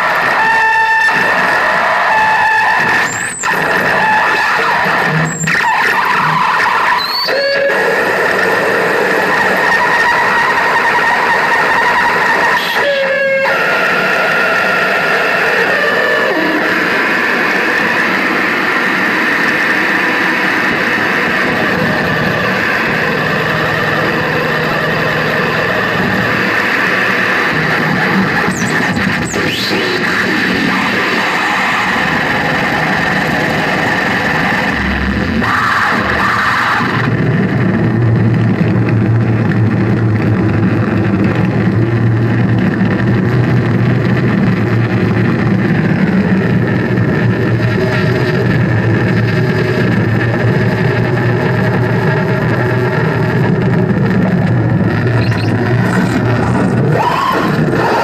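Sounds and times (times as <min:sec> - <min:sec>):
amplified noise music: 0:00.0 - 0:58.0
steady low drone: 0:07.7 - 0:58.0
low hum: 0:13.7 - 0:58.0.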